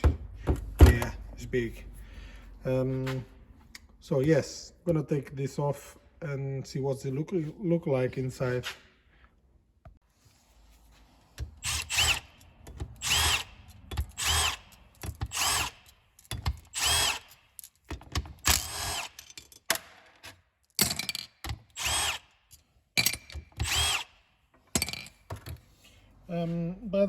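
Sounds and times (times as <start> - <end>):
power drill bursts: 11.6 - 12.4, 13.0 - 15.9, 16.7 - 17.3, 21.8 - 22.3, 23.6 - 24.1.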